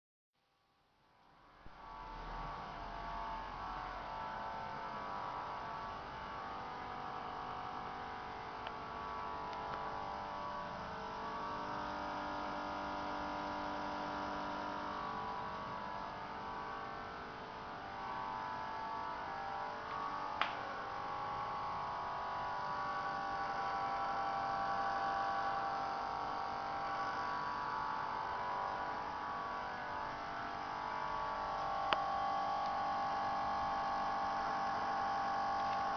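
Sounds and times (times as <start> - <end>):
motor humming with whining tones: 1.2 - 35.9.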